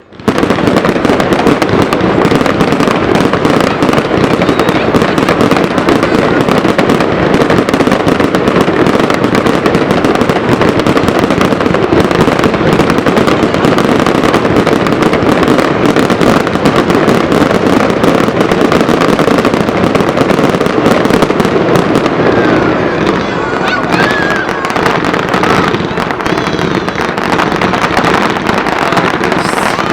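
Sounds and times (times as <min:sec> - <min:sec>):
fireworks bangs and crackles: 0:00.0 - 0:29.9.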